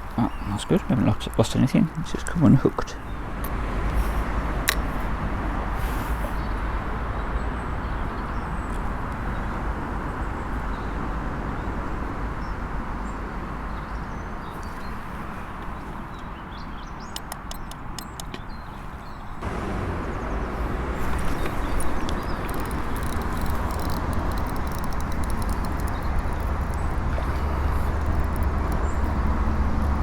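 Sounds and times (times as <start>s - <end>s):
deep rumble: 19.4s - 30.0s
steady rushing noise: 19.4s - 30.0s.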